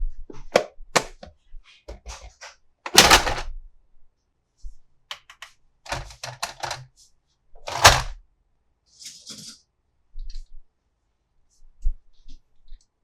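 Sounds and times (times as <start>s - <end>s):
plastic toy parts clicking: 2.9s - 3.4s, 5.1s - 6.8s, 7.7s - 8.1s.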